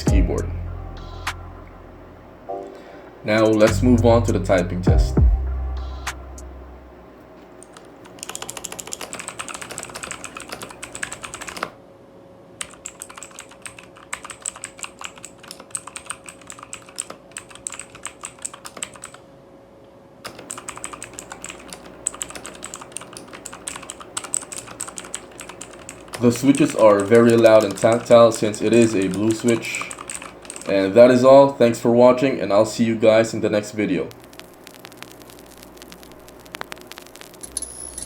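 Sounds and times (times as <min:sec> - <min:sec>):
mechanical keyboard typing: 0:07.6 - 0:11.8, 0:12.6 - 0:19.2, 0:20.3 - 0:30.9.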